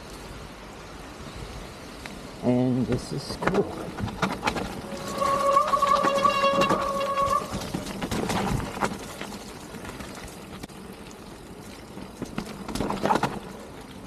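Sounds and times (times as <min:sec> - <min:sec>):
tyre noise: 0:03.0 - 0:10.9, 0:11.6 - 0:14.0
bike clattering over rough trail: 0:03.0 - 0:14.0.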